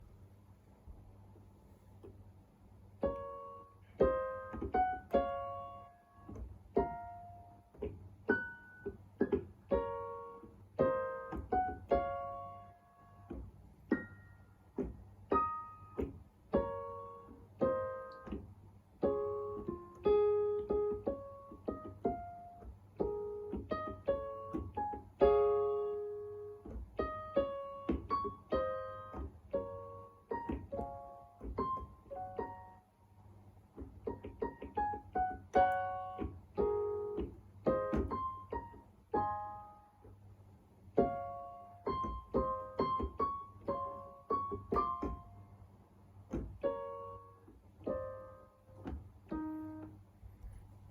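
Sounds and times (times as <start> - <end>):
electronic keyboard slow melody: 3.0 - 14.6, 15.4 - 32.9, 34.1 - 40.1, 46.6 - 50.0.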